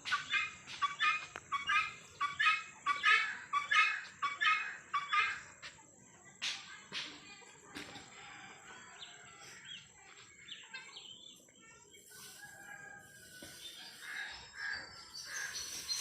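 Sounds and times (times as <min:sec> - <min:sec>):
chickens calling and chirping: 0:00.0 - 0:16.0
rooster crowing: 0:12.2 - 0:14.2.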